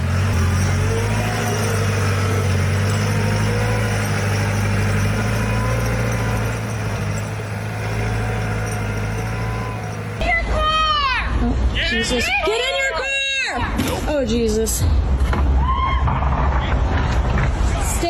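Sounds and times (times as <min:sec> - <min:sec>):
engine humming: 0:00.0 - 0:10.4.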